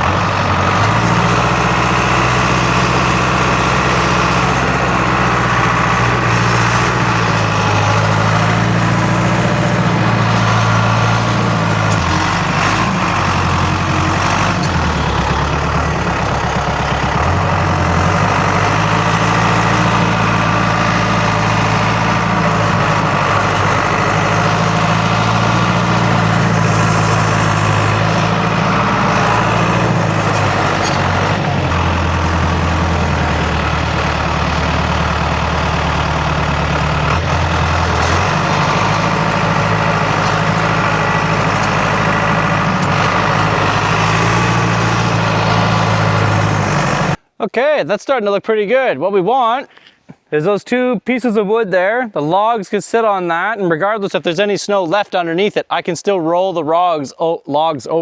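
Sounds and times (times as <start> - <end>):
diesel engine running: 0.0 - 47.2.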